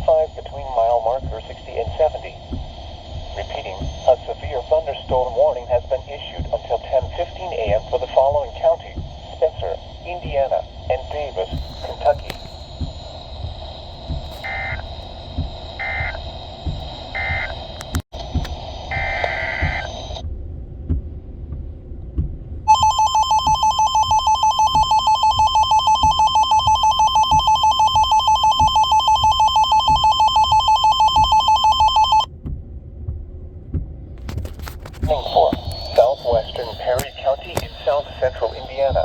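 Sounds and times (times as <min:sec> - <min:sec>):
longer data burst: 0:00.0 - 0:18.0, 0:22.7 - 0:32.3, 0:35.0 - 0:39.0
short data bursts over radio: 0:03.3 - 0:13.2, 0:14.2 - 0:15.0, 0:34.8 - 0:39.0
pulsing two-tone alert signal: 0:22.7 - 0:32.3.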